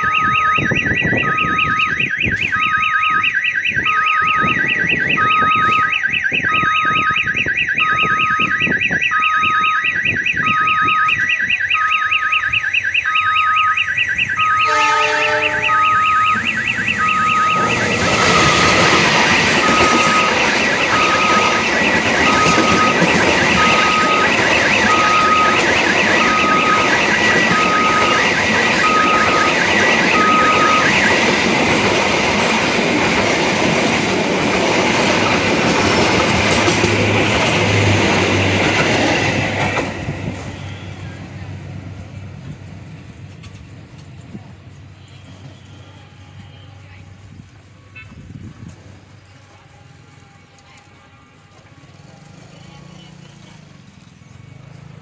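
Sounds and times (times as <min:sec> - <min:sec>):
short beeps: 0:00.0 - 0:31.3
crossing siren warbling: 0:00.0 - 0:41.5
train rumble and wheel clatter: 0:14.2 - 0:55.0
train horn: 0:14.6 - 0:16.0, 0:45.0 - 0:47.1.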